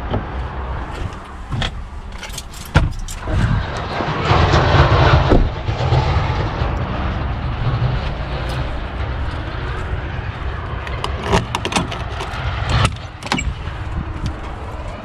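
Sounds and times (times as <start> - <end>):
low rumble: 0.0 - 15.0
keys jangling: 2.1 - 3.4.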